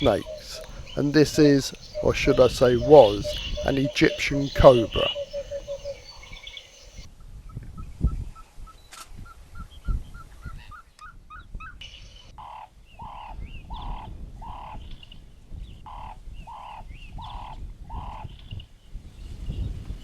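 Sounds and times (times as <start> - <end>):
bird caw-like calls: 0.0 - 7.0
small birds chirping: 0.0 - 7.1, 11.8 - 18.7.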